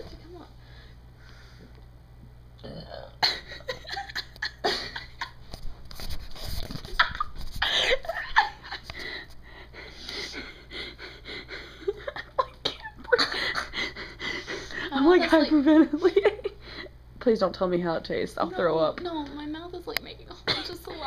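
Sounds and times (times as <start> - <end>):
girl stifled laughter: 3.2 - 5.4, 6.8 - 8.9.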